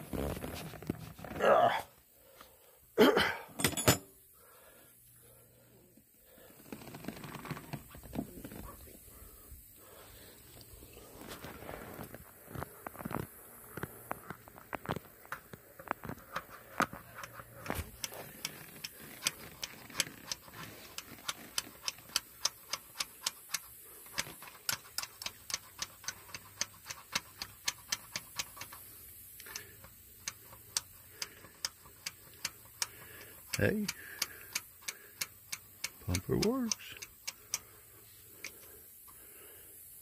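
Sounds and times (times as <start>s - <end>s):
hand pump plunger clicking: 16.3s - 37.7s.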